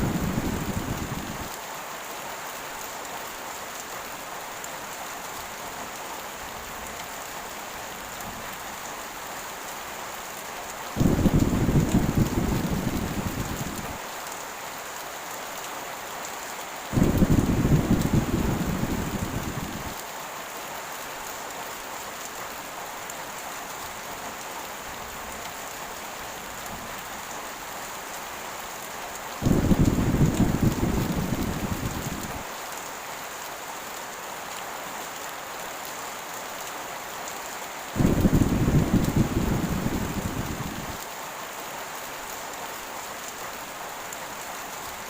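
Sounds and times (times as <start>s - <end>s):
rolling thunder: 0.0s - 1.5s, 11.0s - 14.0s, 17.0s - 20.0s, 29.4s - 32.4s, 38.0s - 41.0s
heavy rain hissing: 0.0s - 45.0s.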